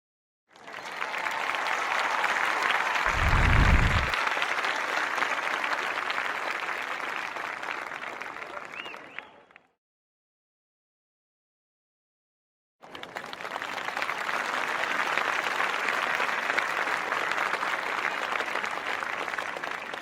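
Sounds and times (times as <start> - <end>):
crowd applause: 0.5 - 9.5, 12.8 - 20.0
low rumble: 3.1 - 4.1.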